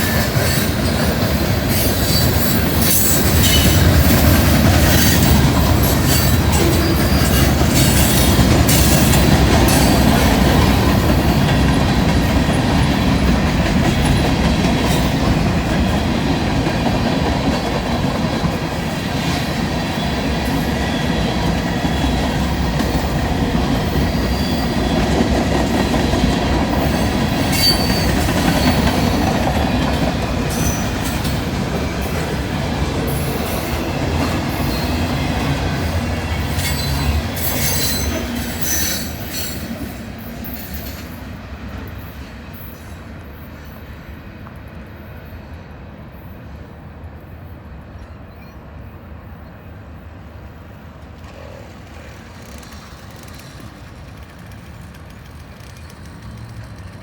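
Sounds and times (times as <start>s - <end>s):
train cars rumbling past: 0.0s - 57.0s
high-pitched wheel squeals: 27.5s - 28.2s
wheels clicking over rail joints: 51.0s - 57.0s.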